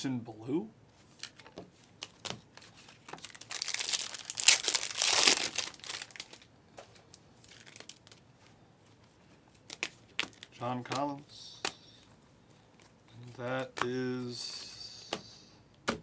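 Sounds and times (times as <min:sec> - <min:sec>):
foil wrapper crinkling and tearing: 0:02.9 - 0:06.5, 0:07.1 - 0:08.3, 0:09.6 - 0:10.6.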